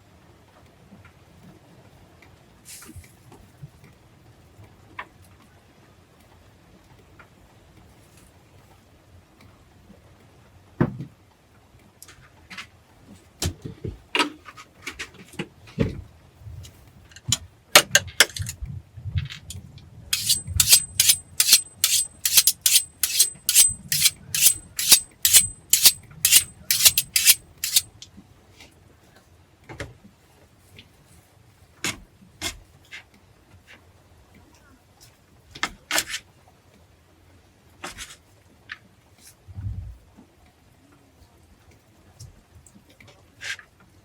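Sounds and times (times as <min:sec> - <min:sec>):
short rubbing or scraping strokes: 0:20.2 - 0:27.9.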